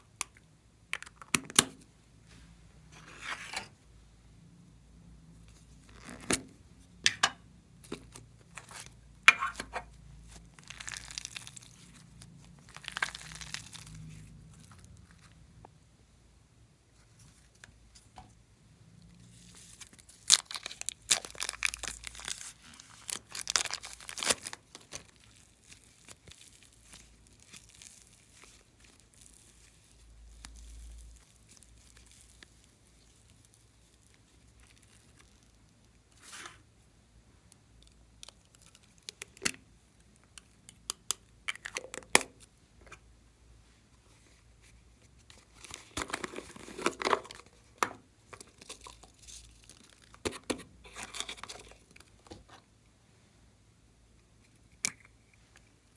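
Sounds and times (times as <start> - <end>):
slime crackling and popping: 10.3 - 15.2, 19.4 - 36.3, 37.8 - 42.4, 45.4 - 50.3.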